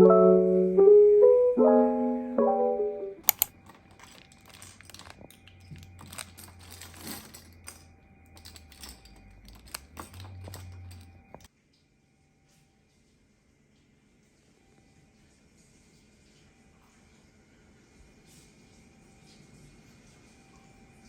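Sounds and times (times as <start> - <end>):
faint low hum: 2.8 - 21.0.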